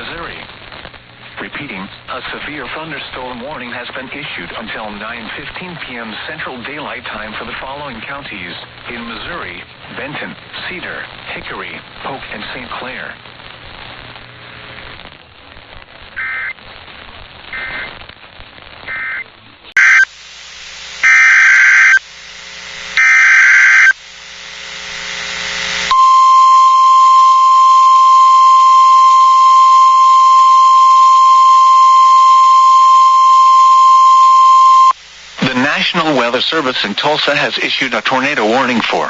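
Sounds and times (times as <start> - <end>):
emergency alert data bursts: 19.8 - 20.1, 21.0 - 22.0, 23.0 - 24.0, 25.9 - 36.3
steady loud warning tone: 19.8 - 20.1, 21.0 - 24.0, 25.0 - 35.0.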